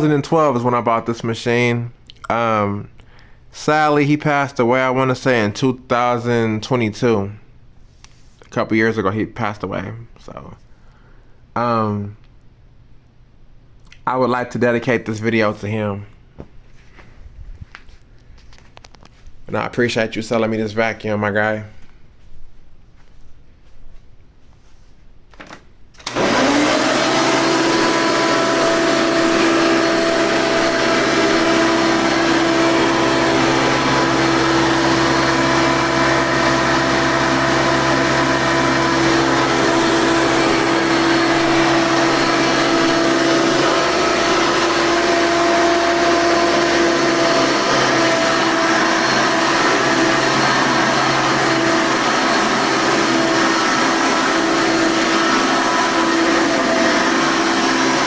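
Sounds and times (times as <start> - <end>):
vacuum airflow rush: 26.0 - 58.0
vacuum cleaner motor whining: 26.0 - 58.0.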